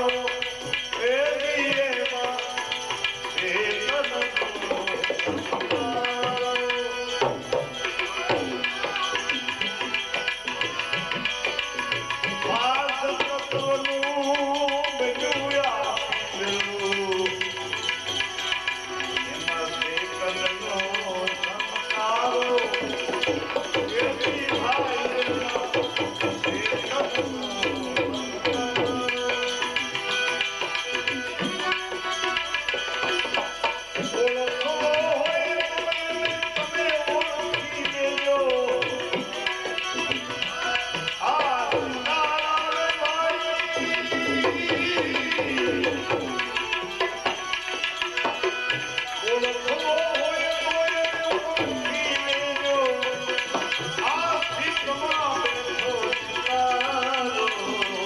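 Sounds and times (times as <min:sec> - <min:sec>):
tabla rhythm: 0:00.0 - 0:58.0.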